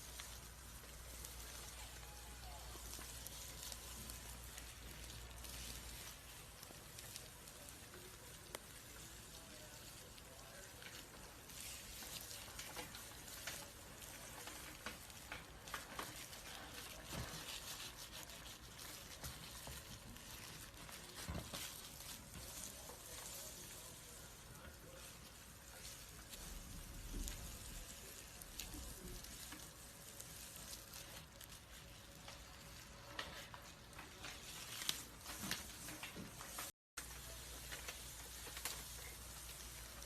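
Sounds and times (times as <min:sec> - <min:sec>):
snake skin crackling and rustling: 0:00.0 - 0:40.0.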